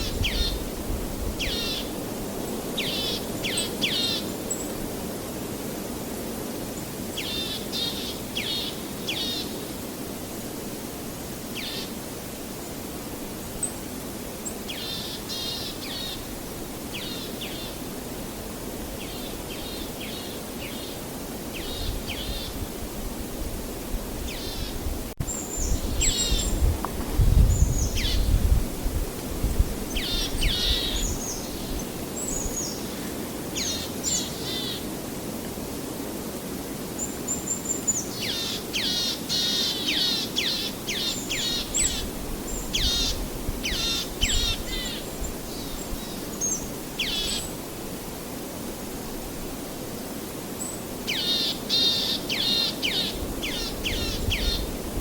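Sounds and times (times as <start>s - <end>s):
small birds chirping: 0.0s - 0.7s, 1.4s - 2.0s, 24.3s - 28.4s, 29.9s - 34.8s, 37.0s - 47.6s, 50.6s - 54.8s.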